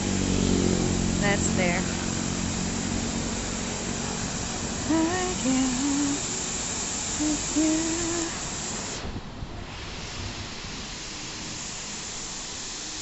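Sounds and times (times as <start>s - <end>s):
steady rushing noise: 0.0s - 13.0s
person humming: 4.8s - 6.3s, 7.2s - 8.4s.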